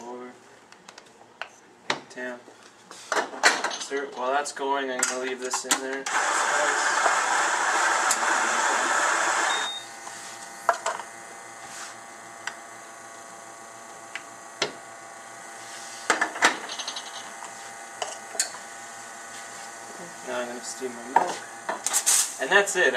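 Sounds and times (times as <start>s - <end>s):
coffee grinder running: 6.1s - 16.1s, 17.0s - 22.0s.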